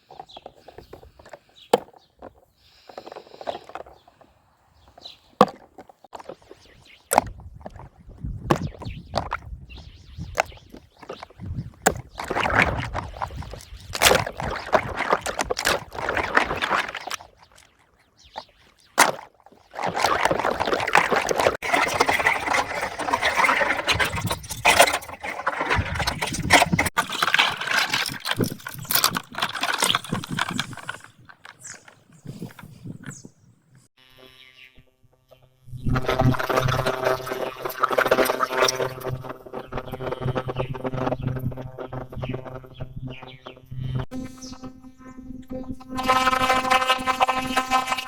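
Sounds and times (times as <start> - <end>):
water splashing and sloshing: 11.8 - 32.6, 36.0 - 43.2
sharp clicks and knocks: 21.6 - 33.3, 35.9 - 44.2.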